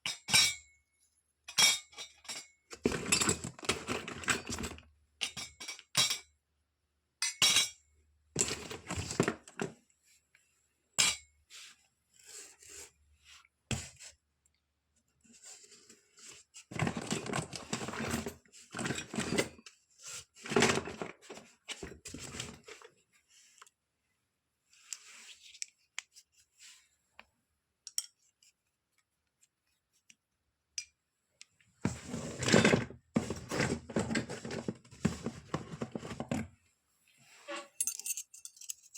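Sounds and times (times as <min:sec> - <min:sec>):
toy kitchen pieces clinking: 0:37.7 - 0:38.9.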